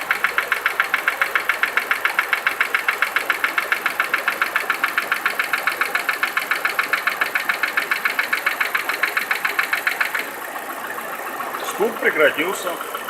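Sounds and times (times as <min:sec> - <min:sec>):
car engine idling: 0:00.0 - 0:13.0
rapid ticking knock: 0:00.0 - 0:13.0.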